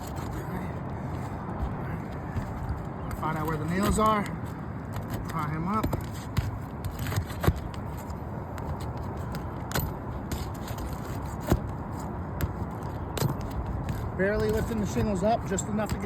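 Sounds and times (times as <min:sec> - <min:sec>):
steady background noise: 0:00.0 - 0:16.0.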